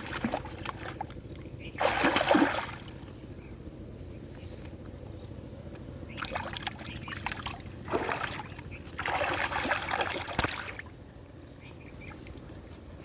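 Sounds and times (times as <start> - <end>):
water splashing and sloshing: 0.0 - 3.2, 6.1 - 11.1.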